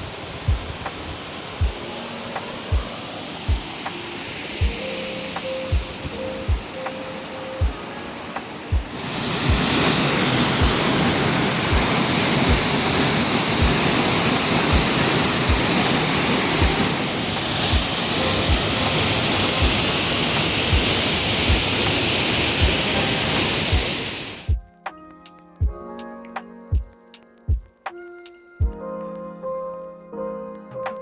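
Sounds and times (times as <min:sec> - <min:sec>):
music with low beat: 0:00.0 - 0:22.0, 0:22.6 - 0:29.2
waterfall rushing: 0:00.0 - 0:24.5.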